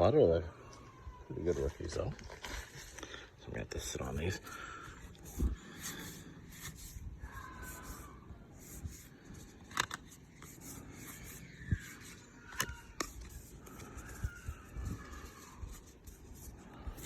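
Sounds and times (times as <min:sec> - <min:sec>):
cardboard cards rubbing and scraping: 0:03.8 - 0:17.0.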